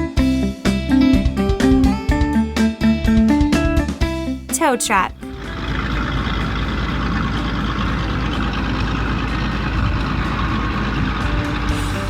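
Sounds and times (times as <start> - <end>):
truck engine idling: 4.7 - 12.0.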